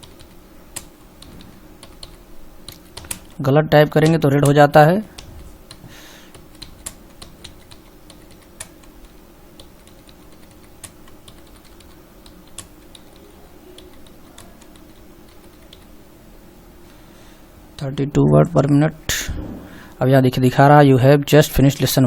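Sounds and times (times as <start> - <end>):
computer keyboard typing: 0.0 - 16.0
faint steady hum: 0.0 - 22.0.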